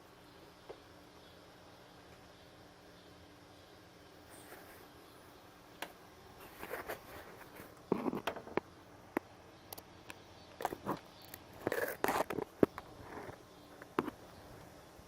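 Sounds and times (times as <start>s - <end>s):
short scraping and rustling: 4.3s - 5.0s, 6.4s - 8.6s
faint clicks and knocks: 6.6s - 14.7s.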